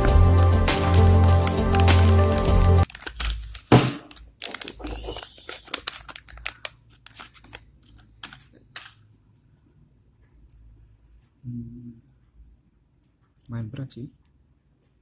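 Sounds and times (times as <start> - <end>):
plastic packaging crinkling: 0.8 - 9.1.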